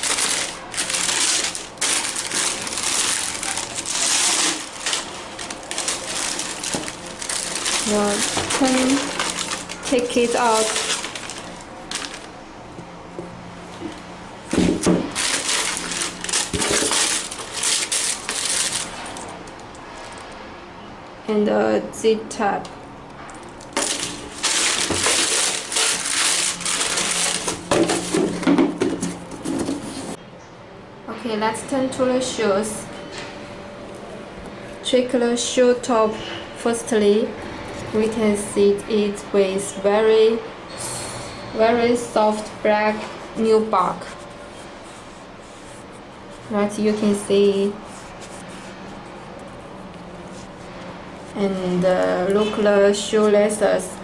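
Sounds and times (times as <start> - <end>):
paper crinkling and rustling: 0.0 - 12.4, 13.8 - 20.3, 23.5 - 30.2, 44.0 - 51.4.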